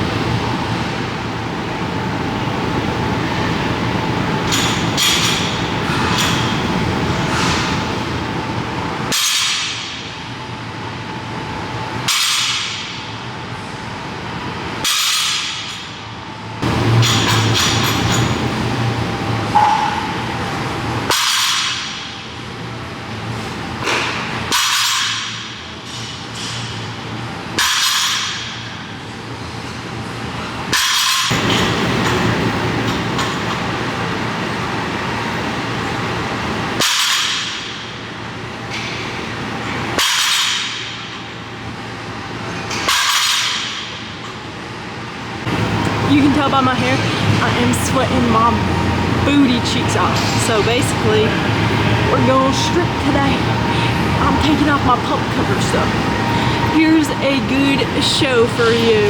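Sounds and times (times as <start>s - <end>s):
gym background noise: 14.2s - 21.1s, 29.4s - 59.0s.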